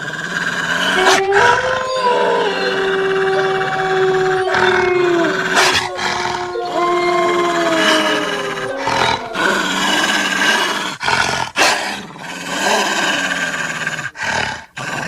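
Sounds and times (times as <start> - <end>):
rasping snarl and growl: 0.0 - 15.0
wolf howl: 0.7 - 10.6.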